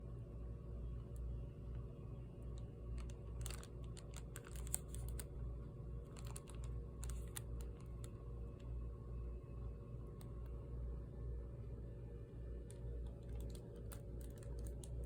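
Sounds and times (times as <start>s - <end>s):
low steady hum: 0.0s - 15.0s
small objects clicking and crinkling: 2.5s - 5.4s, 6.1s - 8.2s, 12.7s - 15.0s.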